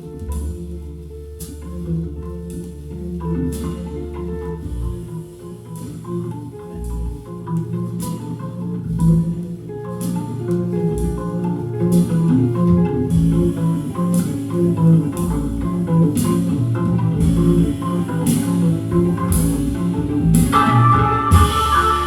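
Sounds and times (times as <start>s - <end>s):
moving bass line: 0.0s - 22.0s
music with steady drum beat: 8.9s - 22.0s.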